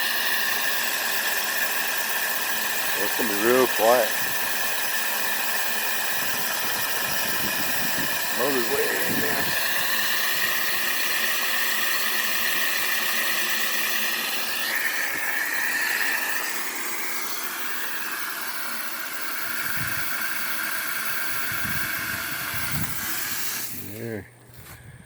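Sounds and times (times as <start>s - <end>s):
water and air hissing from valve: 2.8s - 5.0s, 6.3s - 13.4s, 19.4s - 24.0s.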